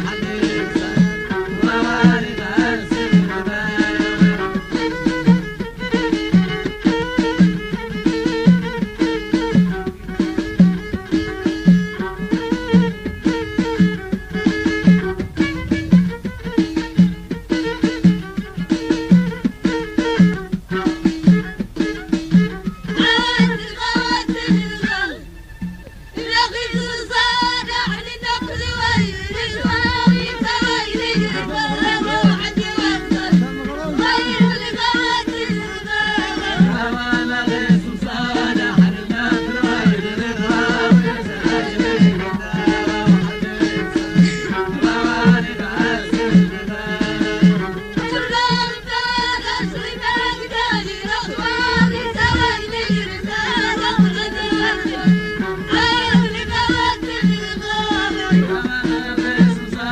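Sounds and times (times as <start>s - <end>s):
hand drum beat: 0.0s - 24.9s, 27.5s - 59.9s
folk song singing: 0.0s - 59.9s
steady drum beat: 9.4s - 19.5s, 28.2s - 34.6s, 50.9s - 59.9s.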